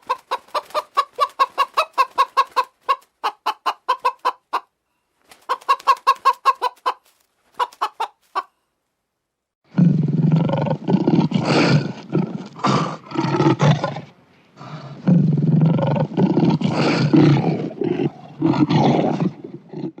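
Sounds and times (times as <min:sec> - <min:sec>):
hen clucking: 0:00.0 - 0:08.6
big cat roaring: 0:09.7 - 0:20.0.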